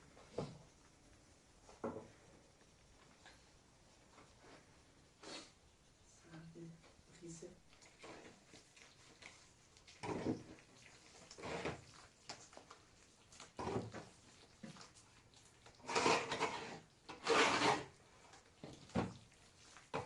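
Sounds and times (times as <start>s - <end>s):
scraping rubbing noises: 15.8s - 18.0s.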